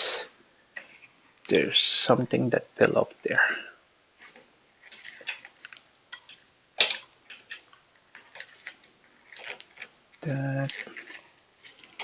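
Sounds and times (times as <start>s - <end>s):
metal tools clicking and tapping: 6.1s - 7.7s.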